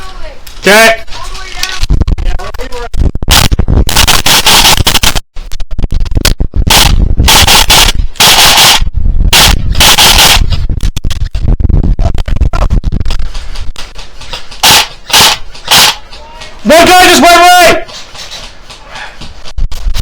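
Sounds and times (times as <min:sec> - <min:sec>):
wind buffeting microphone: 0:01.2 - 0:04.0, 0:05.5 - 0:15.6
airsoft gunfire clicks: 0:14.3 - 0:16.2.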